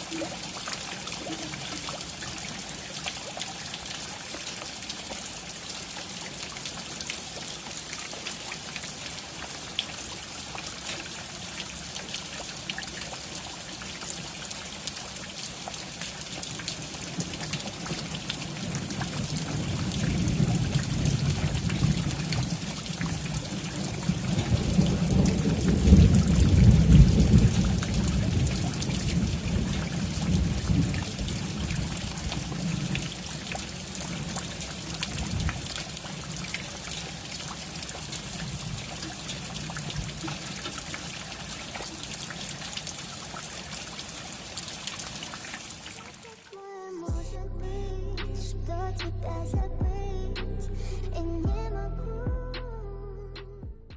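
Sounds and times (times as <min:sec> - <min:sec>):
rain pattering: 0:00.0 - 0:46.6
thunder rolling: 0:18.6 - 0:32.9.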